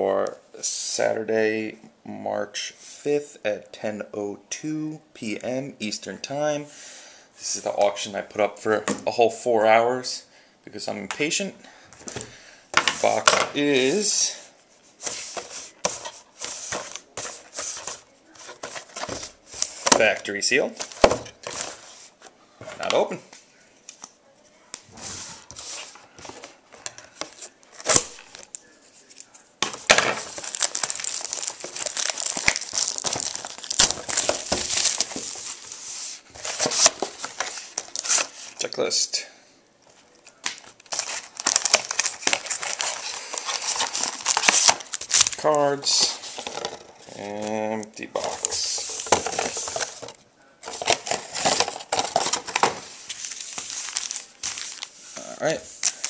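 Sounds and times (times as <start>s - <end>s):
shrink wrap crinkling: 25.4s - 38.7s, 39.9s - 56.0s.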